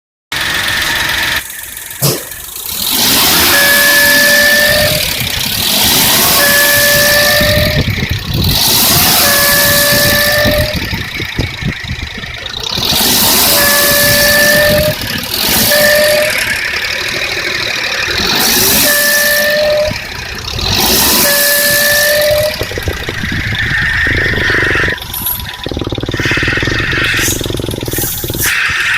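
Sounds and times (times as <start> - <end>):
engine hissing running noise: 0.4 - 28.9
hose whistle: 3.0 - 5.2, 5.8 - 7.9, 8.6 - 10.9, 13.1 - 16.6, 18.4 - 20.1, 20.9 - 22.8, 23.4 - 25.4, 26.1 - 28.9.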